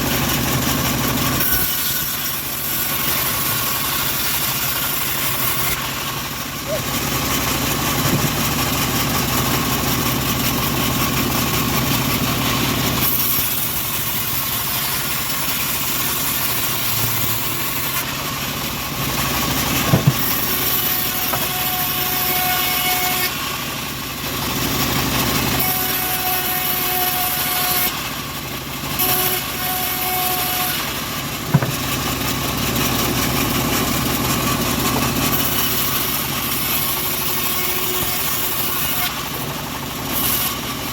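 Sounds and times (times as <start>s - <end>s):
sawmill engine running: 0.0s - 40.9s
sharp knocks: 8.0s - 8.4s, 19.9s - 20.5s, 31.5s - 31.9s.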